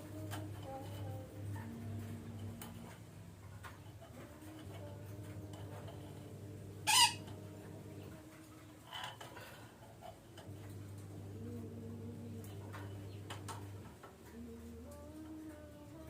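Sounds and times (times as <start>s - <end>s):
steady low hum: 0.0s - 16.0s
parakeet squawk: 6.8s - 7.3s.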